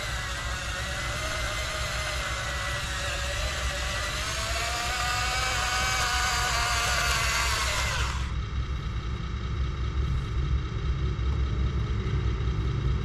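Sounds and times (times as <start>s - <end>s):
small electric motor whining: 0.0s - 8.4s.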